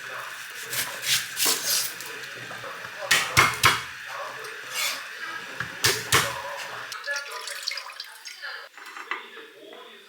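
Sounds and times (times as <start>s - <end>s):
dishes and utensils clinking: 1.0s - 7.6s, 8.7s - 9.8s.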